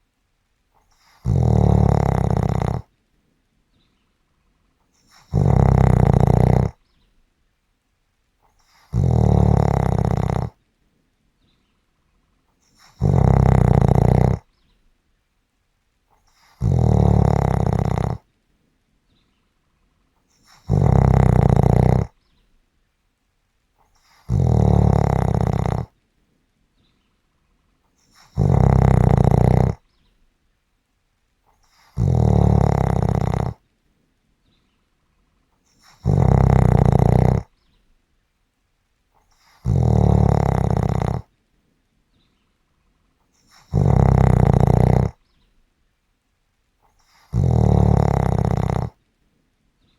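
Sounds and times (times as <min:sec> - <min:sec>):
quiet breathing: 0:00.0 - 0:07.6, 0:08.2 - 0:15.3, 0:15.9 - 0:22.8, 0:23.6 - 0:30.4, 0:31.2 - 0:38.0, 0:38.9 - 0:45.7, 0:46.6 - 0:49.9
loud snoring: 0:01.0 - 0:02.9, 0:05.0 - 0:06.8, 0:08.6 - 0:10.6, 0:12.7 - 0:14.5, 0:16.4 - 0:18.3, 0:20.4 - 0:22.2, 0:24.0 - 0:26.0, 0:28.0 - 0:29.8, 0:31.7 - 0:33.6, 0:35.7 - 0:37.5, 0:39.4 - 0:41.3, 0:43.4 - 0:45.2, 0:47.0 - 0:49.0.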